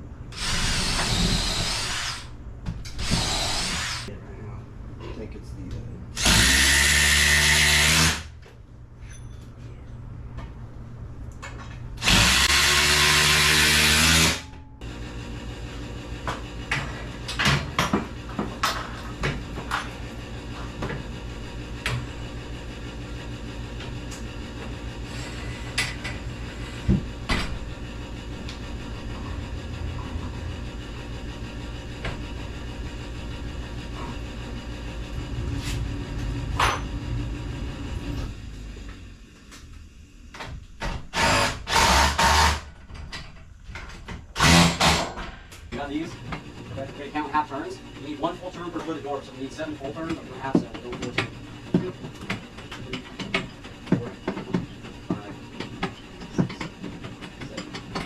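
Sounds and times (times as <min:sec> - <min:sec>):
steady low hum: 0:00.0 - 0:07.2, 0:07.8 - 0:58.0
power drill running: 0:00.4 - 0:02.3, 0:03.0 - 0:04.1, 0:06.2 - 0:08.3, 0:12.0 - 0:16.0, 0:41.1 - 0:42.7, 0:44.4 - 0:45.1.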